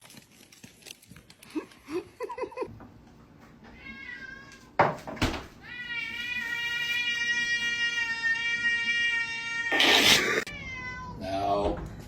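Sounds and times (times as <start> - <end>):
cat meowing: 3.7 - 4.8, 5.6 - 11.3.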